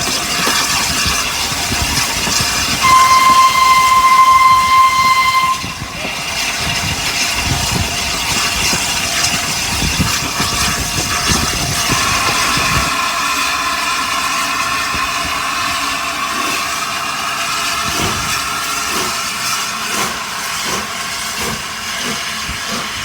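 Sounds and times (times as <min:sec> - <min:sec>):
steam locomotive whistle: 0:02.3 - 0:06.9
hiss of steam: 0:17.5 - 0:23.0.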